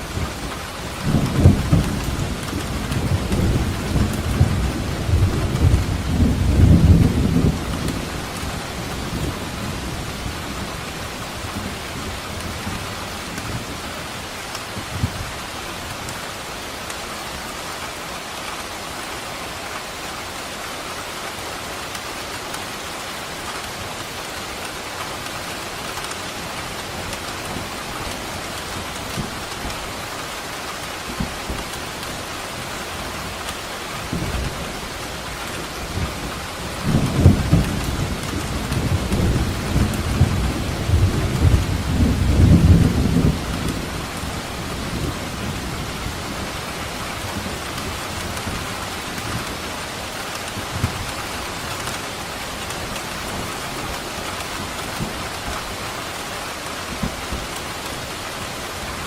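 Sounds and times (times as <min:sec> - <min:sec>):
heavy rain falling: 0:00.0 - 0:59.0
rolling thunder rumble: 0:00.1 - 0:12.8, 0:34.0 - 0:55.7.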